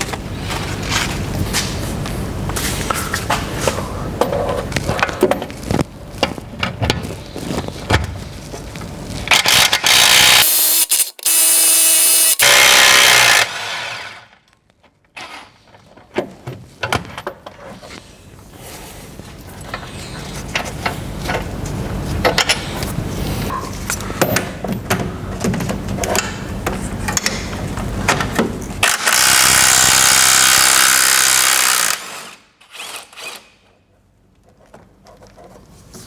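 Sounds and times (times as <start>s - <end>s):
power tool whirring: 9.3s - 14.3s, 28.8s - 33.5s.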